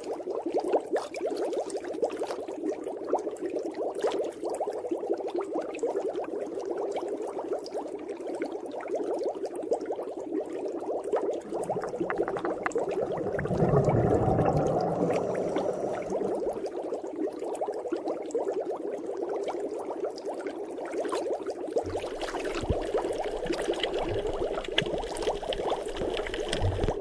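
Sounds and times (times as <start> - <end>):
underwater bubbling: 0.0 - 27.0
crackle of small pops: 11.4 - 16.5, 21.9 - 27.0
low rumble: 11.6 - 16.7.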